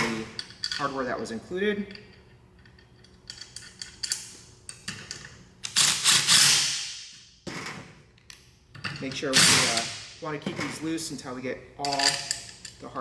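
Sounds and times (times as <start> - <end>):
clicks of nuts and bolts handled: 11.8 - 12.9.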